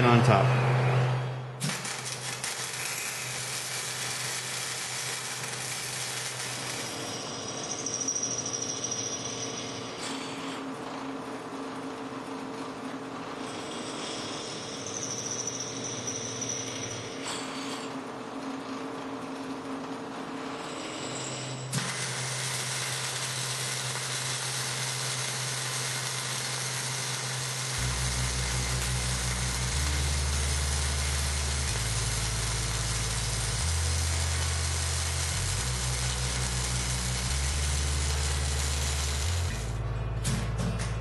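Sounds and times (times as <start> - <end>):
welding arc hissing and crackling: 1.6 - 7.2, 21.8 - 39.8.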